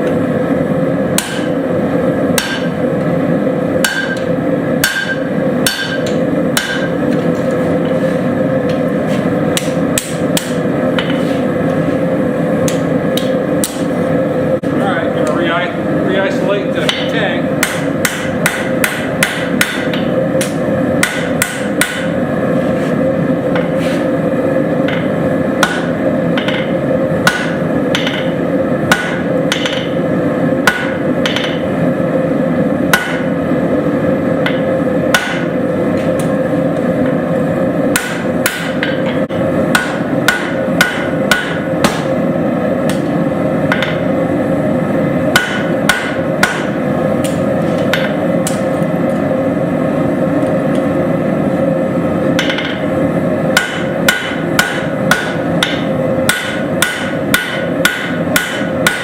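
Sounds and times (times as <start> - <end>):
hammer striking steel on anvil: 1.1 - 1.6, 2.3 - 2.8, 3.8 - 7.0, 9.5 - 11.2, 12.6 - 13.9, 16.8 - 22.2, 24.8 - 30.0, 30.6 - 31.7, 32.9 - 33.4, 34.4 - 36.3, 37.9 - 42.2, 43.7 - 44.1, 45.3 - 48.7, 52.4 - 52.9, 53.5 - 59.0.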